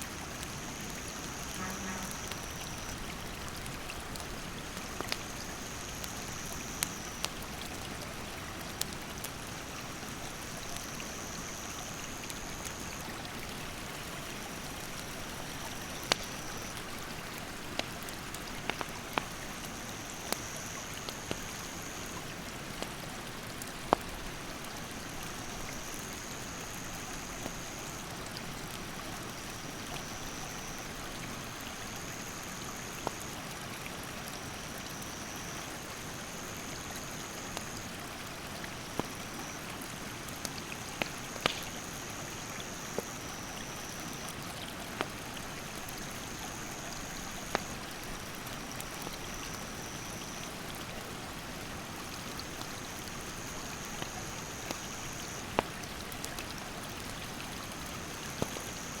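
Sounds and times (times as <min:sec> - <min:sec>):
campfire crackling and popping: 0:00.1 - 0:26.1, 0:32.4 - 0:33.2, 0:37.5 - 0:37.9, 0:38.8 - 0:42.2, 0:42.8 - 0:49.7, 0:52.3 - 0:59.0
insect trilling: 0:00.8 - 0:03.0.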